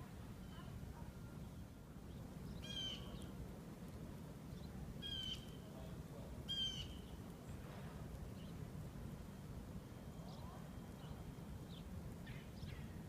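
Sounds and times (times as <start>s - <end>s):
bird calling: 2.6s - 3.2s, 6.5s - 7.1s.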